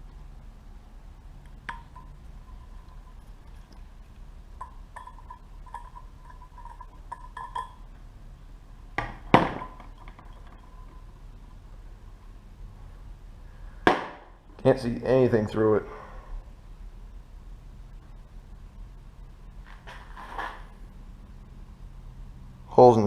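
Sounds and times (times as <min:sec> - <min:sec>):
metal clatter: 0:01.7 - 0:03.8, 0:04.6 - 0:07.9, 0:09.0 - 0:11.2
small metal parts clinking: 0:04.6 - 0:07.8, 0:09.6 - 0:11.2.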